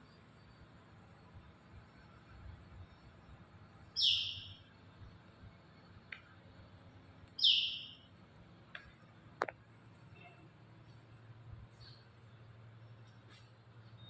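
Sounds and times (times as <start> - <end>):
bird short high calls: 4.0 - 4.6, 7.4 - 8.1
faint bird chips: 7.3 - 8.1.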